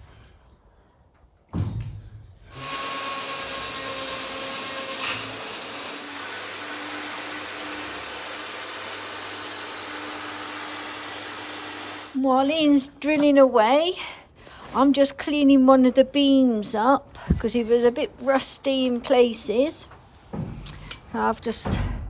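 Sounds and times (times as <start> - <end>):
thump: 1.5 - 2.3
power tool motor whining: 2.5 - 12.2.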